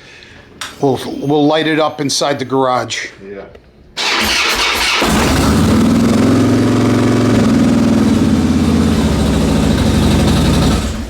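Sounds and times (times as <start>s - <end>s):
motorcycle engine idling: 5.8s - 11.0s.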